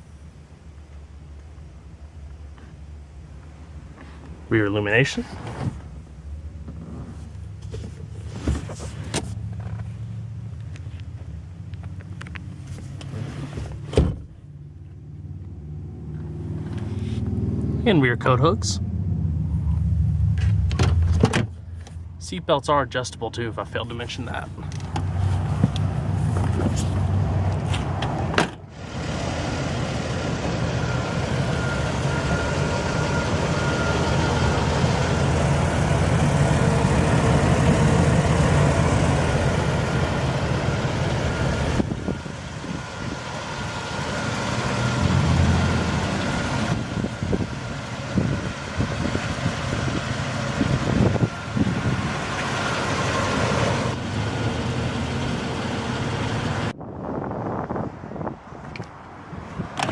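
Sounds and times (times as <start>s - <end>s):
motor vehicle running: 0.9s - 22.2s, 23.6s - 56.8s
faint steady whine: 30.0s - 44.6s.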